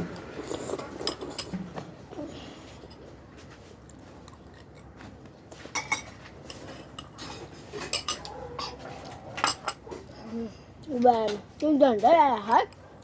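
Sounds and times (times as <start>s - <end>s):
utensils clinking against bowls: 5.7s - 8.8s, 9.4s - 10.3s.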